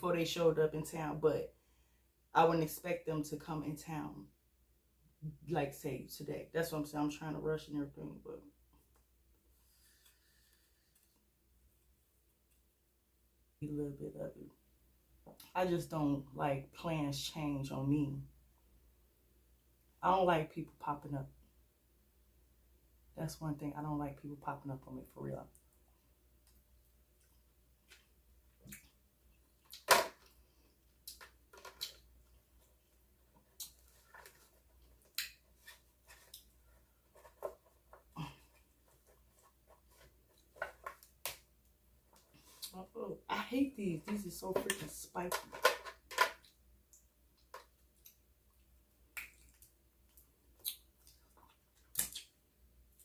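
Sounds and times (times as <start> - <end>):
wet eating smacks and cracks: 46.4 - 53.0.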